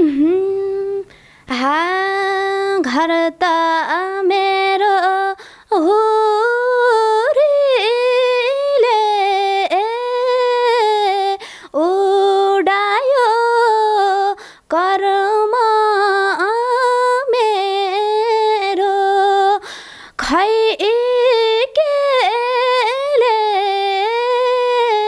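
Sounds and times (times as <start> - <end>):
woman singing unaccompanied: 0.0 - 25.0.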